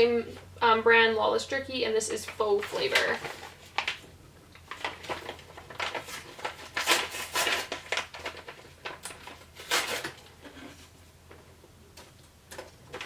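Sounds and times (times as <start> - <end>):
pouch crinkling: 2.6 - 4.0, 4.6 - 10.2.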